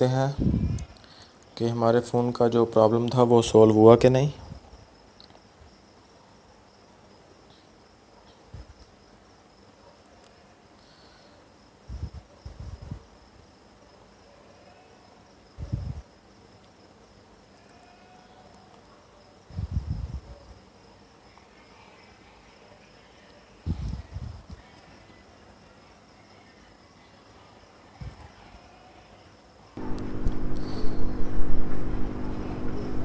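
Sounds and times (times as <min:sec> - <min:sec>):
high insect trill: 0:11.5 - 0:33.0.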